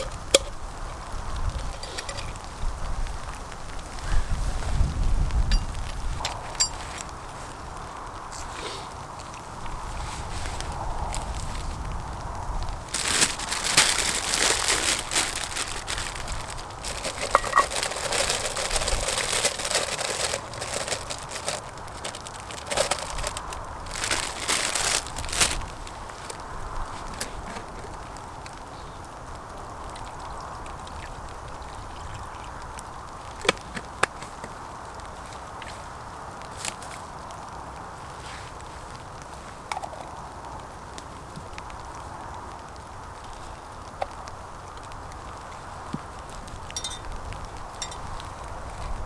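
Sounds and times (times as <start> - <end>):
rustling and crinkling handling noise: 0.0 - 28.8, 33.4 - 40.2.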